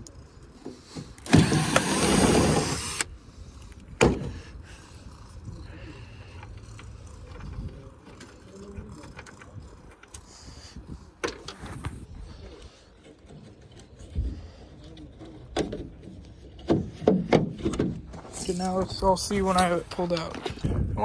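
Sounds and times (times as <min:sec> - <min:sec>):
wind rumble on microphone: 0:07.2 - 0:12.8, 0:20.3 - 0:21.0.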